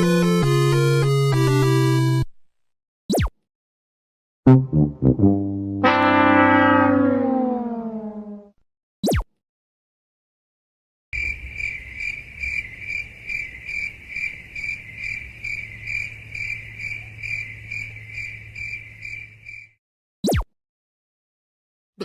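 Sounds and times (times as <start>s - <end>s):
crickets chirping: 11.2s - 19.7s.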